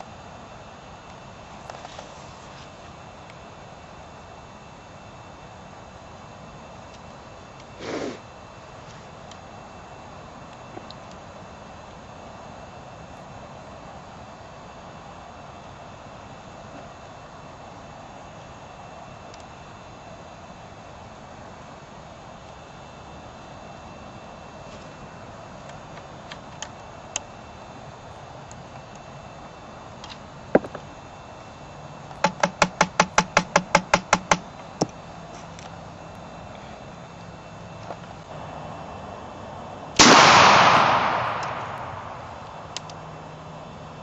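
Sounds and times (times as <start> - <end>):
steady rumble and hiss: 0.0 - 44.0
rifle shot with rumbling tail: 40.0 - 42.7.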